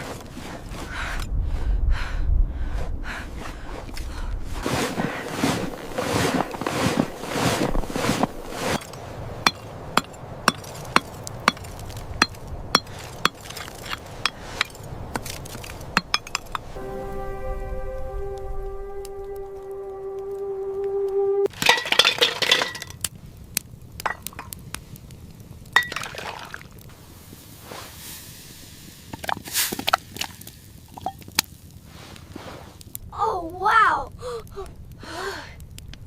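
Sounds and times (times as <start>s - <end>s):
scraping strokes: 3.2s - 16.8s
soft sustained music tones: 16.8s - 21.5s.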